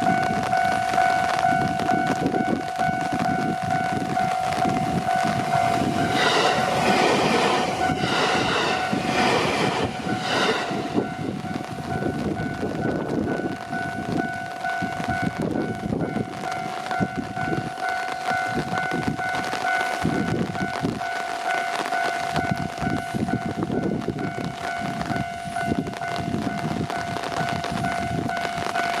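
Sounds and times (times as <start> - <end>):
train horn: 0.0 - 12.2
level crossing warning bell: 0.0 - 29.0
train wheels rumbling on rails: 0.0 - 29.0.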